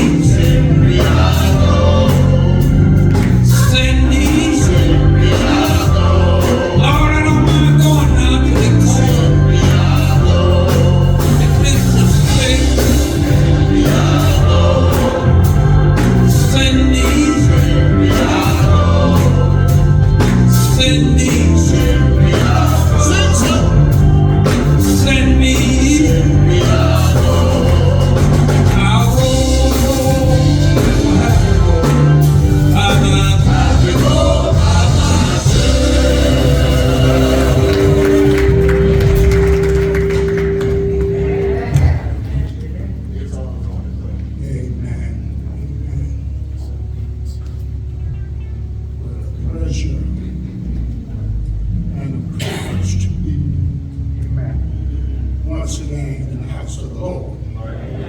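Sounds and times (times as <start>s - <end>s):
singers with band: 0.0s - 42.6s
steady bass beat: 0.0s - 57.5s
organ: 0.0s - 58.0s.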